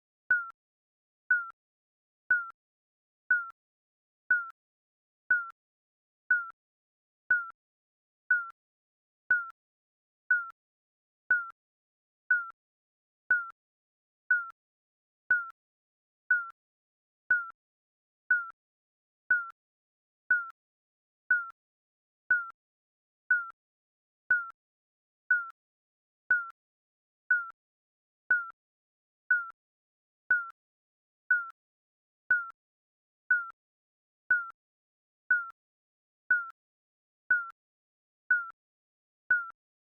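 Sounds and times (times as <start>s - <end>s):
high electronic timer beeps: 0.3s - 0.5s, 1.3s - 1.5s, 2.3s - 2.5s, 3.3s - 3.5s, 4.3s - 4.5s, 5.3s - 5.5s, 6.3s - 6.5s, 7.3s - 7.5s, 8.3s - 8.5s, 11.3s - 11.5s, 13.3s - 13.5s, 23.3s - 23.5s, 29.3s - 29.5s, 33.3s - 33.6s, 34.3s - 34.5s, 37.3s - 37.5s, 38.3s - 38.6s, 39.3s - 39.5s.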